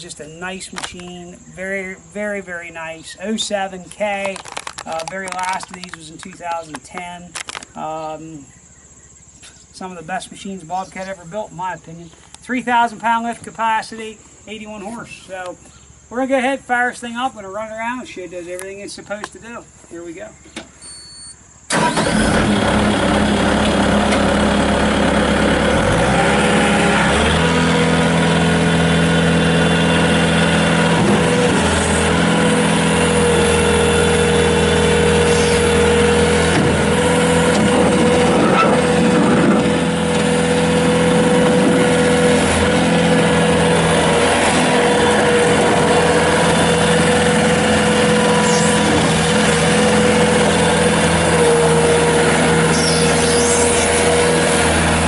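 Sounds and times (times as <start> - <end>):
diesel engine running: 21.7 - 55.0.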